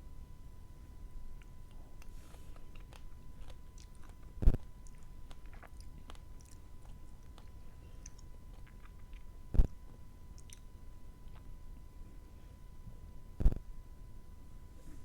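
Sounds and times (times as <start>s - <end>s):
chewing with wet mouth clicks: 1.4s - 11.9s.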